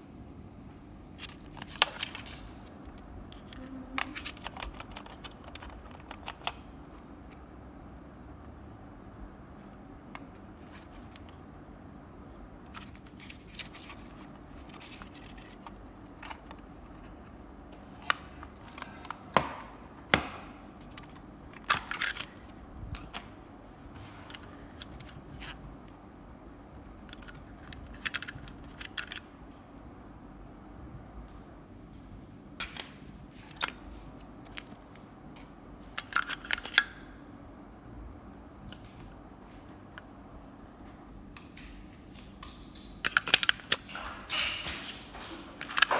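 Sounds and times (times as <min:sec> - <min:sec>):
computer mouse clicking: 0:02.9 - 0:07.0
mouse scraping and rustling: 0:10.3 - 0:11.3, 0:12.7 - 0:19.1.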